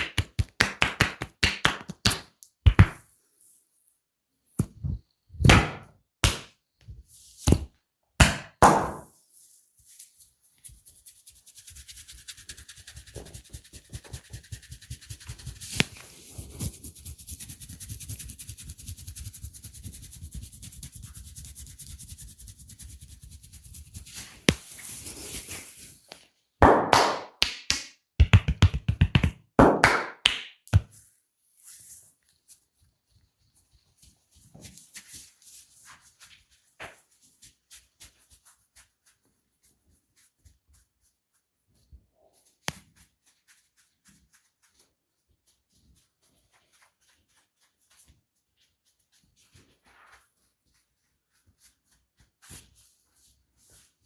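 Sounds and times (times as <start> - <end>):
hand slaps on skin: 0.0 - 3.0, 26.6 - 30.9
fast light hand tapping: 28.2 - 30.0.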